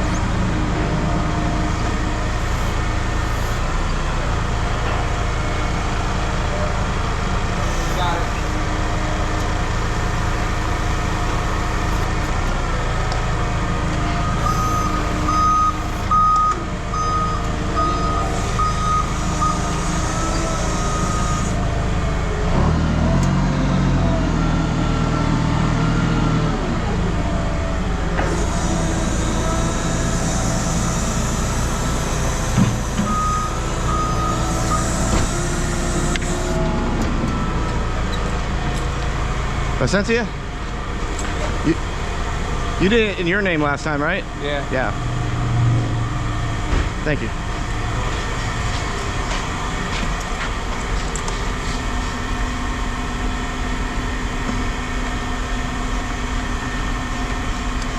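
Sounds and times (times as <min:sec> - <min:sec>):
heavy vehicle engine running: 0:00.0 - 0:57.9
reversing alarm beeps: 0:09.5 - 0:12.3, 0:14.1 - 0:21.6, 0:28.4 - 0:38.3.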